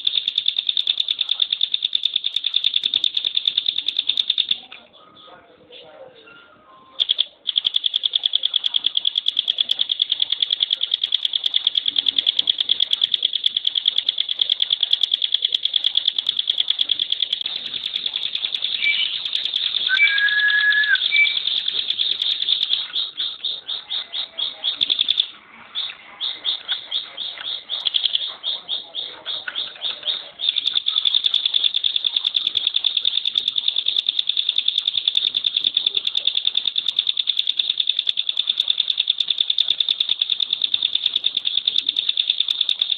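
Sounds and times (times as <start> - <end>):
bird rattling trill song: 0.0 - 4.6, 7.0 - 28.9, 29.6 - 42.9
low whistled bird note: 19.9 - 21.5.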